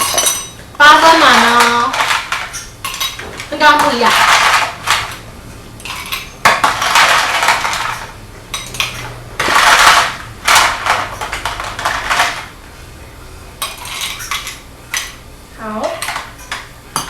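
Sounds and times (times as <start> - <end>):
ice cubes clinking into glass: 5.8 - 12.5.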